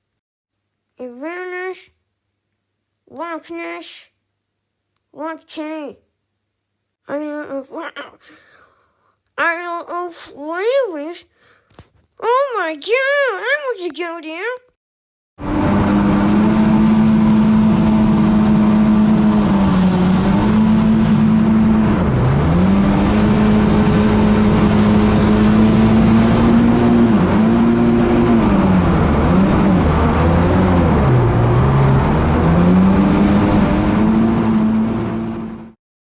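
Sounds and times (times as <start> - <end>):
vehicle engine revving: 15.4 - 35.8.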